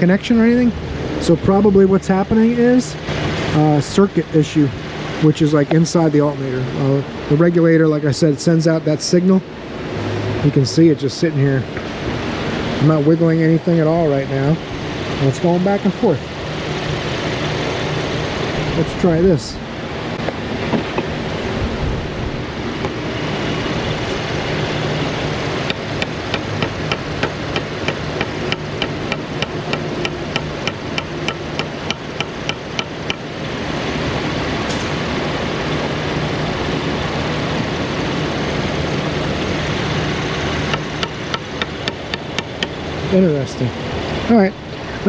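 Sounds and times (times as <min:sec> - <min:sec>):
car engine idling: 0:22.4 - 0:33.7.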